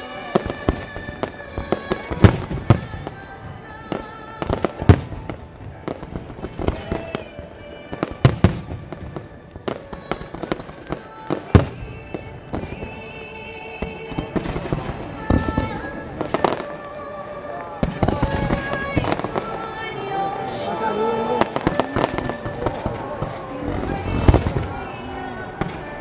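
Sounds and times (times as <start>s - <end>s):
fireworks booming and crackling: 0.2s - 20.6s, 21.2s - 26.0s.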